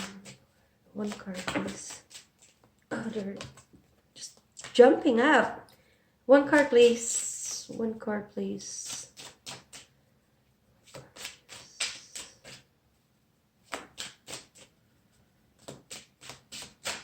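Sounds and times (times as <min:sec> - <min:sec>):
cards being shuffled: 0:00.0 - 0:00.4, 0:01.0 - 0:04.8, 0:08.7 - 0:09.9, 0:10.8 - 0:12.7, 0:13.6 - 0:14.7, 0:15.6 - 0:17.0.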